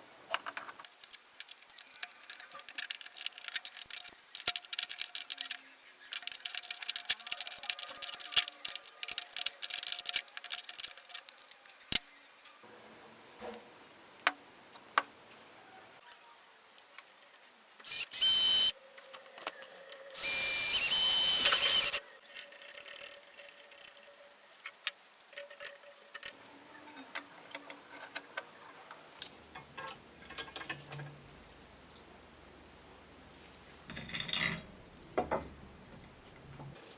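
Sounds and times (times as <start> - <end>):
small parts clicking: 0.3 - 12.1, 16.7 - 31.1
power tool whining: 17.9 - 18.7, 20.2 - 22.0.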